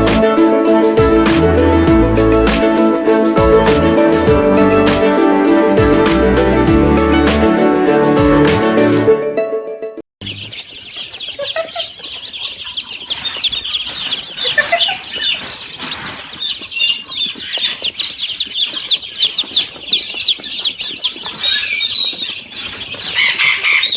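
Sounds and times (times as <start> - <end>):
flock of birds chirping: 10.2 - 23.9.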